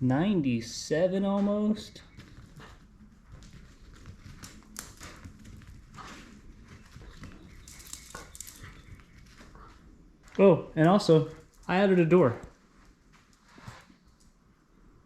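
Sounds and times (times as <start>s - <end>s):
dog moving about rustling: 2.1s - 9.8s.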